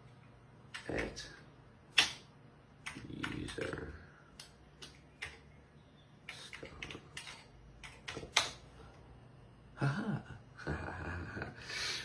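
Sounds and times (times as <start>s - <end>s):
keyboard key clicks: 6.3s - 8.6s.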